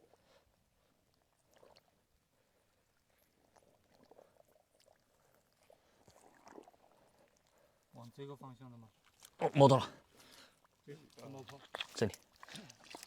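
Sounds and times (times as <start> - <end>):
muddy water splashing: 3.2 - 7.8, 9.0 - 13.0.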